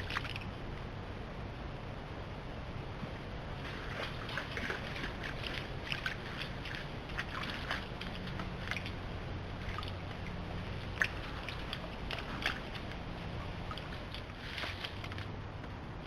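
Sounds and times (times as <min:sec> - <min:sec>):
small sharp splashes: 0:00.0 - 0:00.6, 0:03.5 - 0:15.4
water trickling and sloshing: 0:00.0 - 0:01.2, 0:02.5 - 0:16.0
faint low hum: 0:00.0 - 0:16.0.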